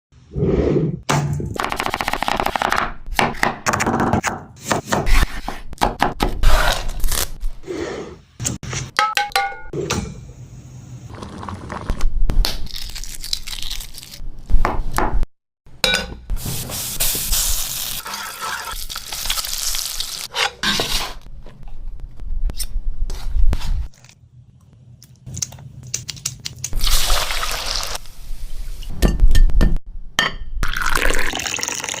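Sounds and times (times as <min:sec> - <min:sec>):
dishes clinking: 0:15.8 - 0:16.3.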